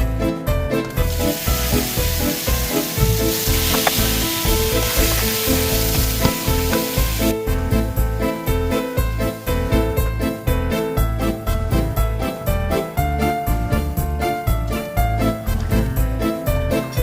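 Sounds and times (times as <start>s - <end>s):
music with a steady beat: 0.0s - 17.0s
food sizzling in a pan: 1.1s - 7.3s.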